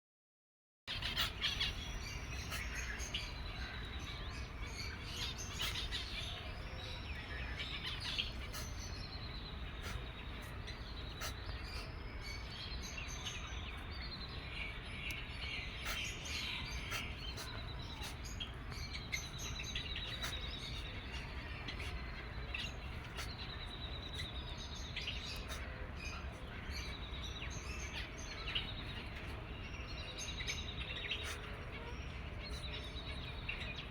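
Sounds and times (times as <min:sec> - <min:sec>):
bird chick buzzy calls: 0:00.9 - 0:12.5.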